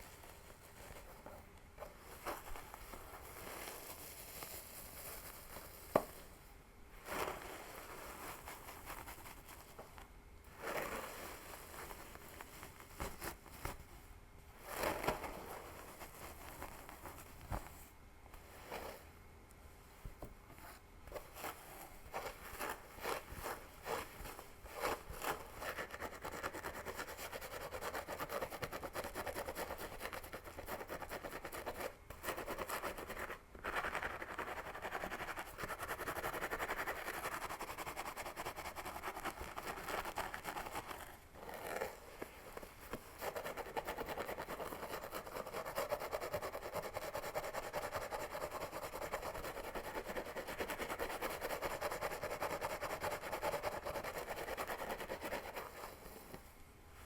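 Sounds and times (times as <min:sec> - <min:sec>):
fingers scratching through hair: 0:21.1 - 0:56.4.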